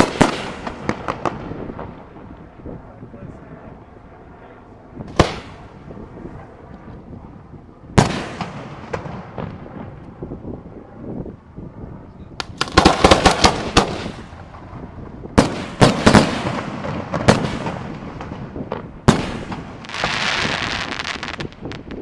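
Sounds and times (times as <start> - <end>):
fireworks bangs with echo: 0.0 - 2.0, 5.1 - 5.6, 8.0 - 9.6, 12.6 - 14.7, 15.4 - 22.0.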